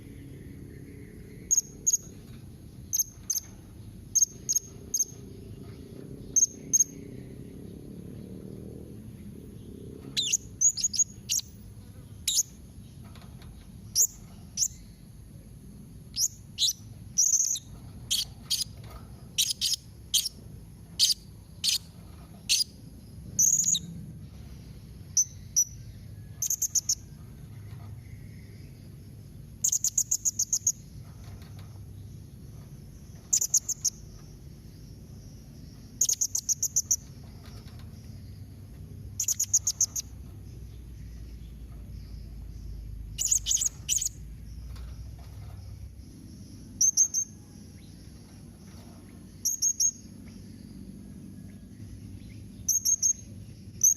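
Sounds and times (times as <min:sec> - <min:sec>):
faint high insect-like tone: 0:00.0 - 0:53.9
parrots chirping: 0:10.2 - 0:11.6, 0:16.2 - 0:20.4, 0:21.0 - 0:22.7, 0:39.2 - 0:40.1, 0:43.2 - 0:44.2.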